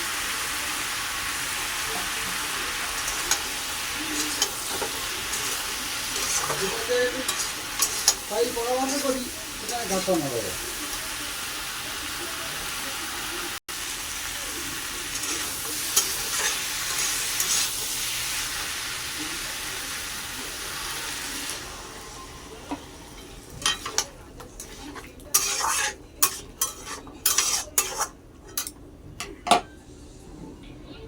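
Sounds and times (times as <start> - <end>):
food sizzling in a pan: 0.0 - 28.8
spatula scraping a pan: 2.8 - 10.2, 15.1 - 17.9, 23.2 - 28.8.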